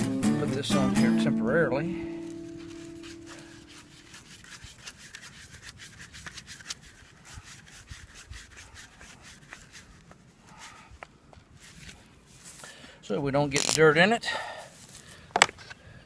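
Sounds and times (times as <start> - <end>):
rubbing and light clicks: 2.3 - 12.7.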